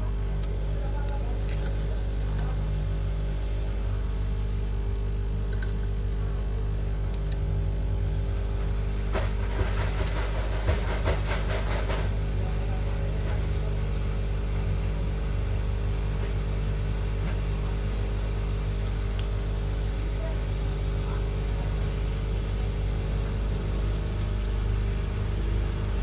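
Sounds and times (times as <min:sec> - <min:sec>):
small clicks and scrapes: 0:00.4 - 0:02.6, 0:05.5 - 0:05.9.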